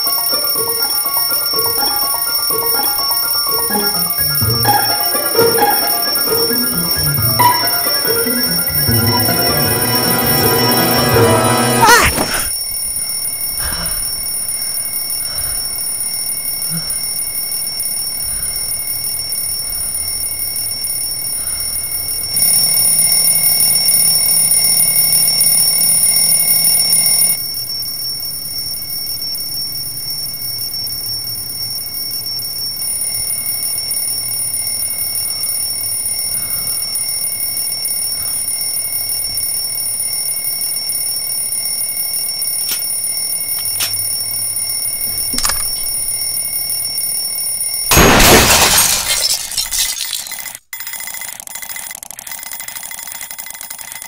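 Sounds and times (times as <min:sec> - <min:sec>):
alarm clock ringing: 0:00.0 - 0:27.4, 0:32.6 - 0:47.9.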